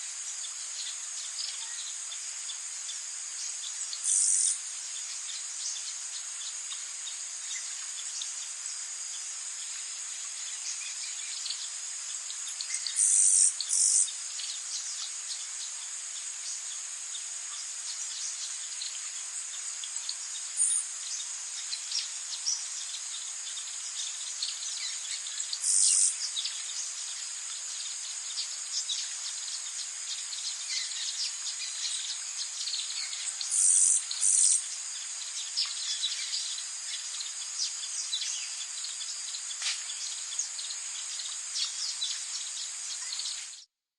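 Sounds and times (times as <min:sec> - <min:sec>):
insect chorus trilling: 0:00.0 - 0:43.7
loud insect buzzes: 0:04.0 - 0:04.6, 0:12.9 - 0:14.1, 0:25.6 - 0:26.3, 0:33.4 - 0:35.1.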